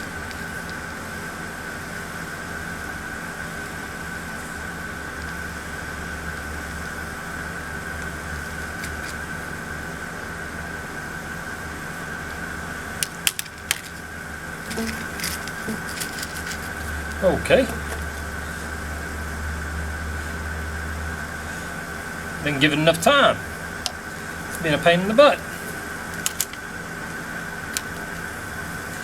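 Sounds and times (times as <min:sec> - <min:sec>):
machine hum with high tone: 0:00.0 - 0:29.0
sharp clicks: 0:26.1 - 0:26.7.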